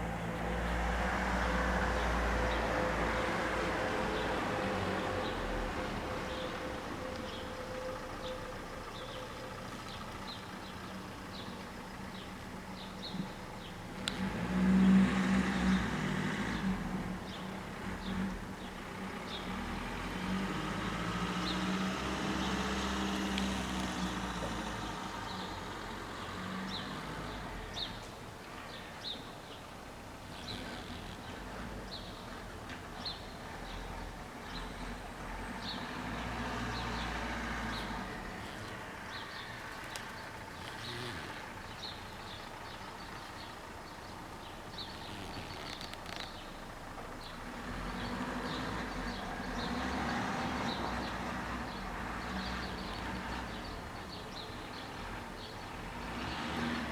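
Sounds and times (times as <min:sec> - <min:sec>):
vehicle engine passing: 0:14.1 - 0:18.3, 0:19.1 - 0:28.0, 0:30.2 - 0:43.2, 0:47.5 - 0:54.1.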